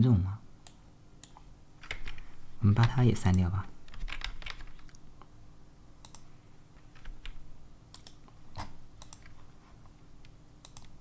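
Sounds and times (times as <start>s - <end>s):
faint steady hum: 0.0s - 11.0s
keyboard and mouse clicks: 0.6s - 5.0s, 6.0s - 6.3s, 6.9s - 9.5s, 10.2s - 11.0s.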